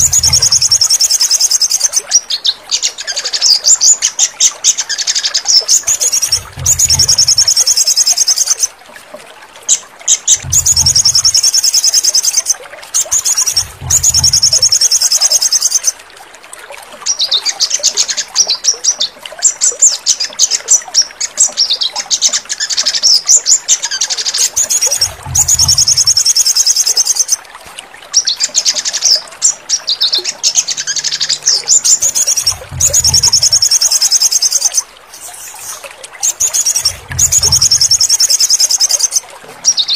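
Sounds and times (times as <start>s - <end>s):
songbird trilling: 0.0s - 2.0s, 10.4s - 12.5s, 30.0s - 39.2s
low thuds: 10.4s - 11.2s, 25.1s - 25.9s, 32.5s - 33.4s.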